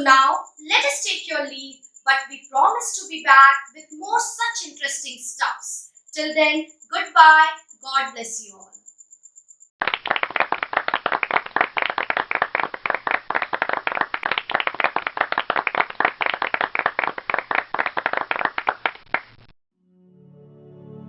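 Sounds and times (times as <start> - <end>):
crowd applauding: 9.8 - 19.3
soft music with sustained notes: 19.8 - 21.0.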